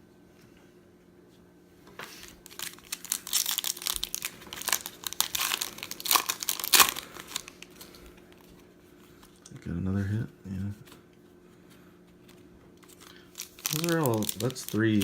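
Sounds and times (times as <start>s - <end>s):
plastic wrapper tearing and crinkling: 2.4s - 8.0s, 12.8s - 15.0s.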